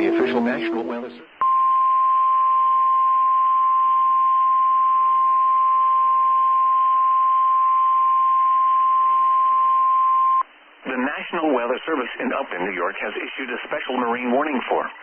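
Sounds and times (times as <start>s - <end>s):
faint radio hiss: 10.4s - 15.0s.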